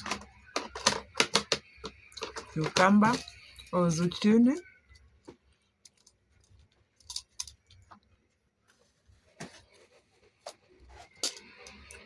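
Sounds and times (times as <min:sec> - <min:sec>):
kitchen items clicking and knocking: 0:00.0 - 0:04.1, 0:11.0 - 0:12.0.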